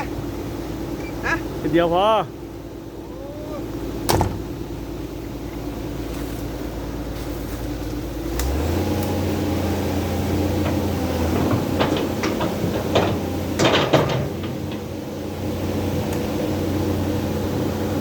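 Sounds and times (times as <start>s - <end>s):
truck diesel engine running: 0.0s - 18.0s
cab and body rattles: 4.0s - 4.8s.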